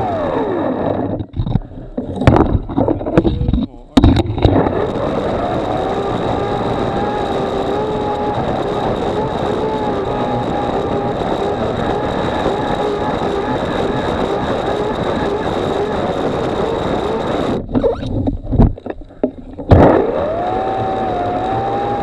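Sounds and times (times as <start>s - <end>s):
pole saw motor whine: 0.0s - 1.2s, 4.4s - 18.0s, 19.7s - 22.0s
low thumps: 1.0s - 5.0s.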